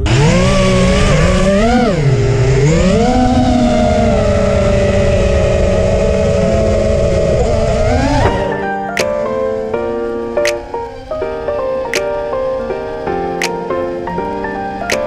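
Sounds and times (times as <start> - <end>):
quadcopter motors whining: 0.0 - 15.0.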